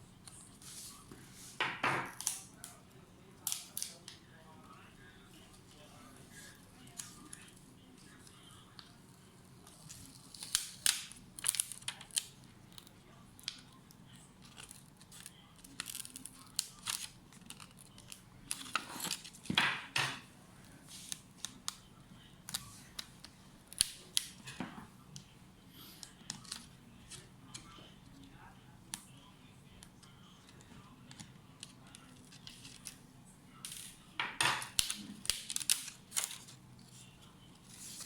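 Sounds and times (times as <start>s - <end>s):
clicks and snaps of handling: 3.4s - 4.2s, 9.6s - 19.4s, 21.0s - 25.3s, 26.0s - 28.3s, 28.9s - 33.0s.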